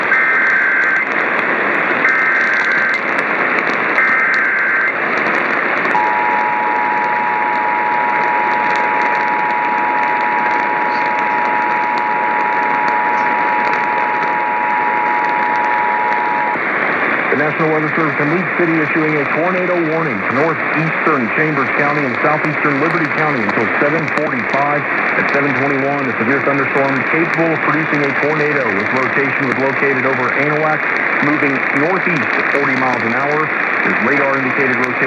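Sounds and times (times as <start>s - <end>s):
radio static: 0.0s - 35.0s
screeching data tones: 2.0s - 3.1s, 4.0s - 5.0s, 5.9s - 35.0s
two-tone attention signal: 6.0s - 16.6s.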